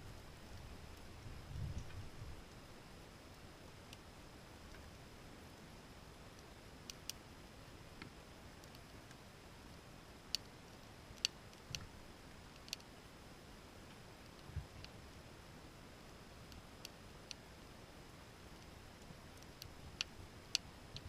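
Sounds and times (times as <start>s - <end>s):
campfire crackling and popping: 0.0s - 5.1s, 7.9s - 12.9s, 18.4s - 21.0s.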